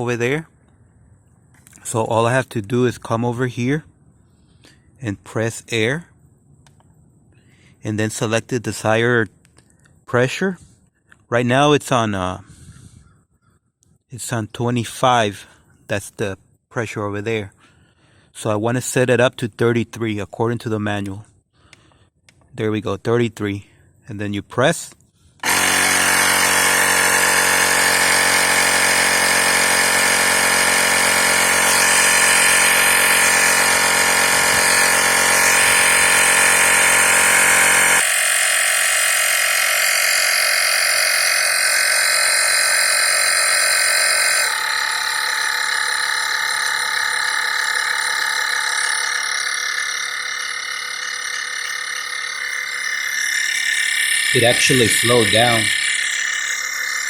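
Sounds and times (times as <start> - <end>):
small air compressor running: 25.4 - 57.0.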